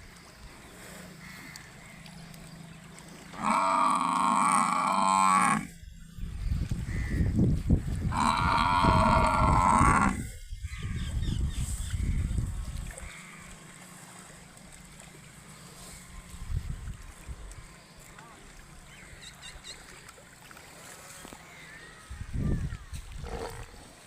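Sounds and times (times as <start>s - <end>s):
water buffalo mooing: 3.3s - 5.8s, 8.1s - 10.4s.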